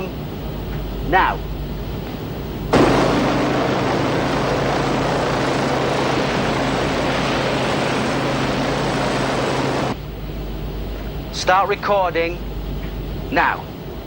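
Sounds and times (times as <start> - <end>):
faint high whine: 0.0 - 14.0
helicopter engine and rotor: 2.7 - 10.0.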